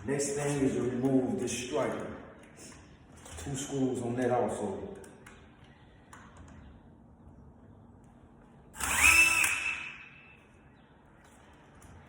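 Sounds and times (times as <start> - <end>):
power drill whining: 8.8 - 10.2.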